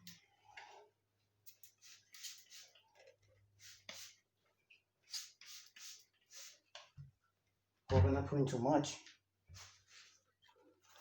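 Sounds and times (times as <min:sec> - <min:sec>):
spray bottle hissing: 0:01.6 - 0:02.8, 0:03.6 - 0:04.2, 0:05.1 - 0:06.6.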